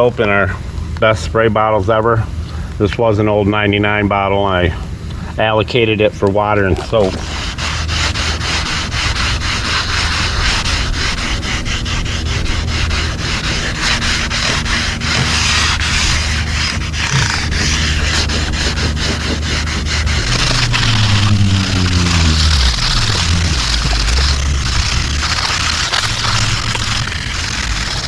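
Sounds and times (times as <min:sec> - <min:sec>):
low motor hum: 0:00.0 - 0:28.0
sander rubbing hiss: 0:06.8 - 0:28.0.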